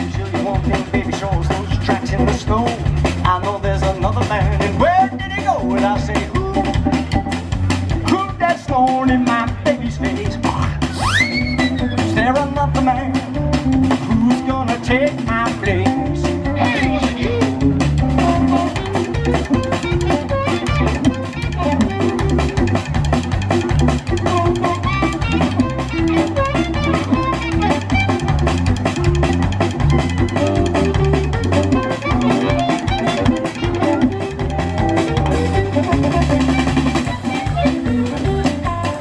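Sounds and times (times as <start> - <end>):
bass guitar: 0.0 - 39.0
drum kit: 0.0 - 39.0
guitar playing: 0.0 - 39.0.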